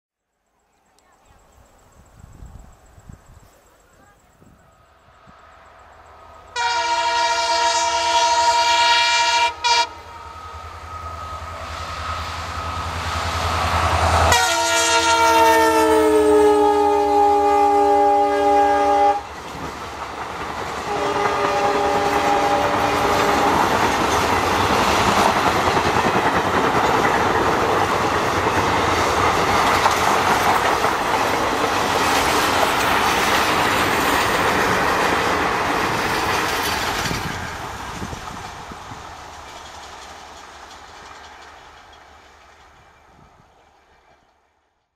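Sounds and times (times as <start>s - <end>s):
locomotive horn: 6.5s - 11.7s, 14.0s - 19.3s, 20.8s - 23.8s
train wheels clattering over rail joints: 19.3s - 43.2s.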